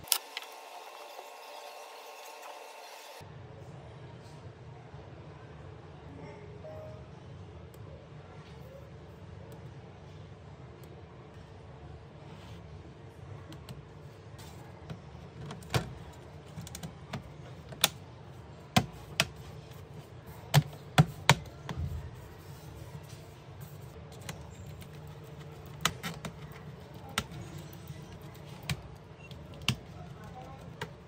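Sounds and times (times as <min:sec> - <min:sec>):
laptop parts clicking: 0:24.2 - 0:31.0.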